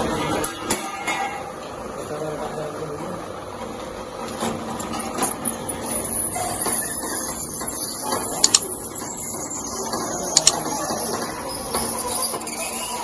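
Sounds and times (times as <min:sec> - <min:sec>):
sharp double click: 0:08.4 - 0:08.7, 0:10.4 - 0:10.6
machine running: 0:08.4 - 0:09.0.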